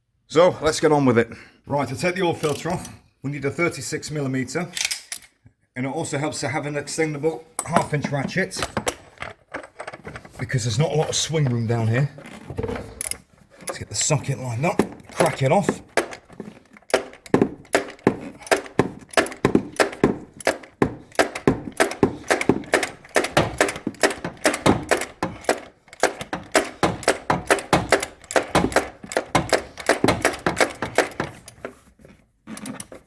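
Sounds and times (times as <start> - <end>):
ratchet clicking: 16.0 - 31.6.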